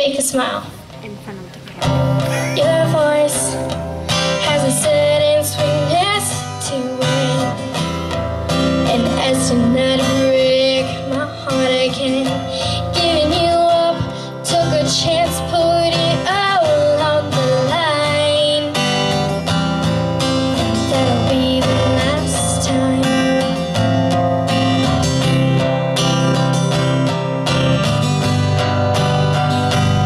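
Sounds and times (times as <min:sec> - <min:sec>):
strummed acoustic guitar: 0:01.8 - 0:30.0
woman singing: 0:02.6 - 0:07.9, 0:08.7 - 0:19.1, 0:20.5 - 0:23.7.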